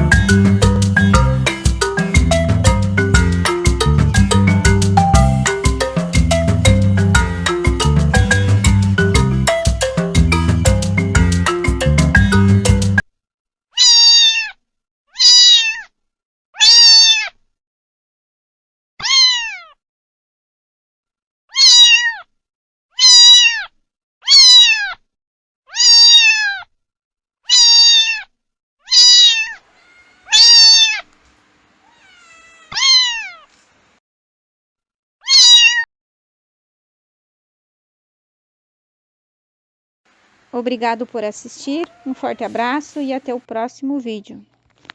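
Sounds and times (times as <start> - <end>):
kittens meowing: 0.0 - 4.3, 5.1 - 9.8, 28.9 - 33.6, 41.2 - 43.3.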